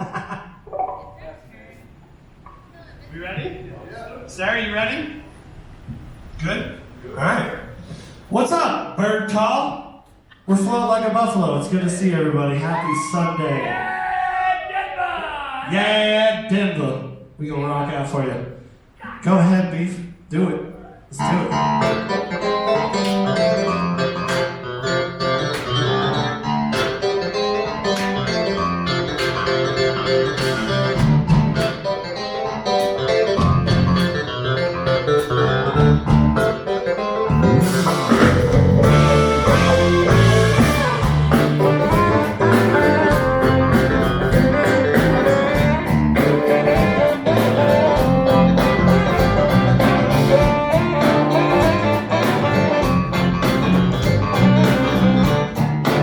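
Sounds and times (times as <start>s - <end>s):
guitar: 21.2s - 56.0s
live band playing: 21.2s - 56.0s.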